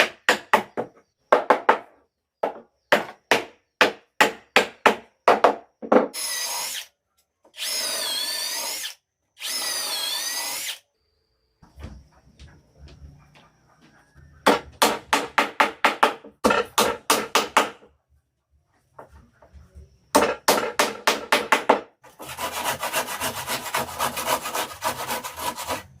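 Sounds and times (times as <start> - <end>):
hand tool strokes on wood: 22.2 - 26.0.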